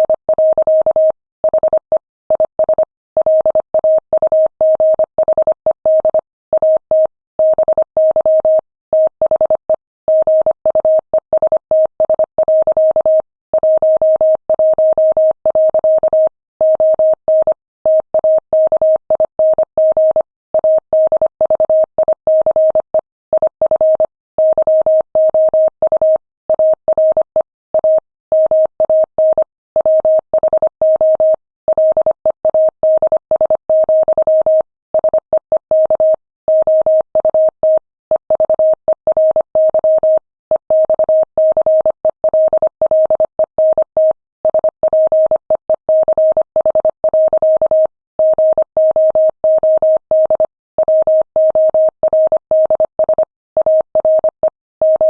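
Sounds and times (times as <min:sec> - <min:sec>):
morse code beeps: 0:15.5 - 0:55.0.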